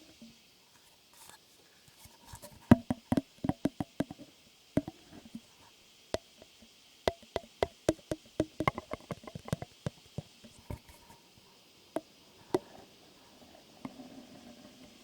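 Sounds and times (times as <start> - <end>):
sharp taps: 4.8 - 5.0, 7.1 - 11.0.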